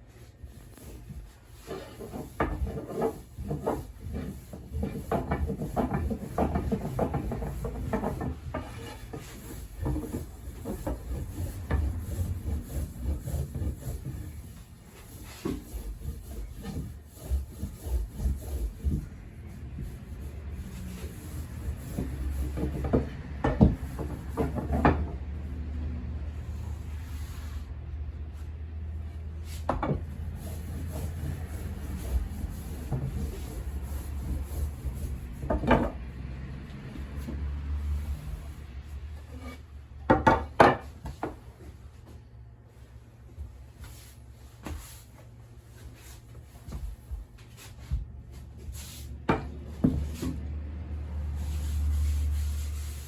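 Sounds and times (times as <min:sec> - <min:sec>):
wooden tools rubbing and knocking: 0:00.0 - 0:25.7, 0:29.1 - 0:42.2.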